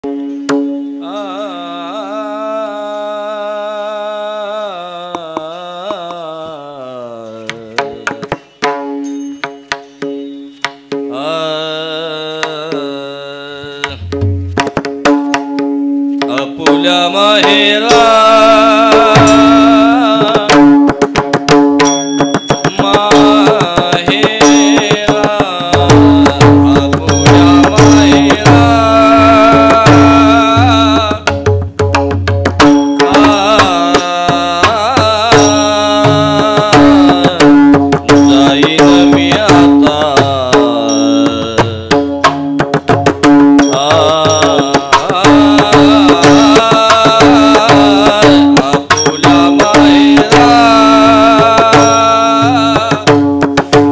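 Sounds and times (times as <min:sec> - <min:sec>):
low hand-drum strokes: 0:13.8 - 0:18.1, 0:18.8 - 0:53.9.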